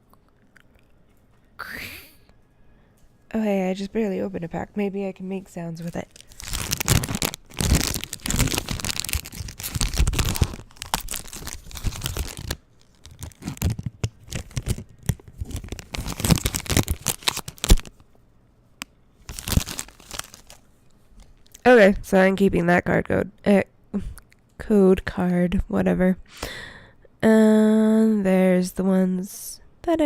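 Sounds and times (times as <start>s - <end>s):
foil wrapper crinkling: 5.8s - 18.0s, 19.2s - 21.6s.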